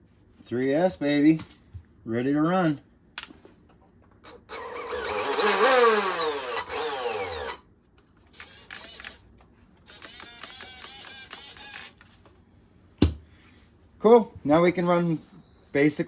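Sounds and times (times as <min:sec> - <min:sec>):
electric motor whine: 0:04.3 - 0:07.6.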